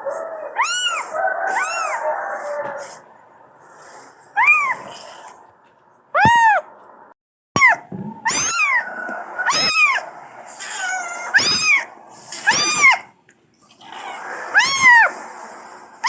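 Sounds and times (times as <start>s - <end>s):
kitten meowing: 0.6s - 2.0s, 6.2s - 6.6s, 7.6s - 8.8s, 9.5s - 10.0s, 10.6s - 13.0s, 14.0s - 15.1s.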